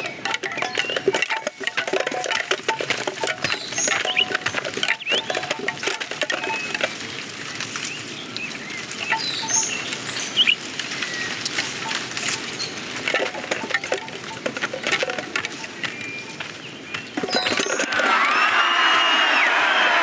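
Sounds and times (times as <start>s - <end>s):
high chirps and squeaks: 3.2s - 5.6s, 9.0s - 18.0s.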